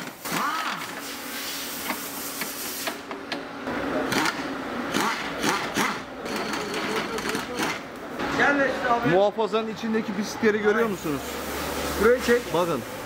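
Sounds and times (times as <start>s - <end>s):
power tool whirring: 0.0s - 3.0s.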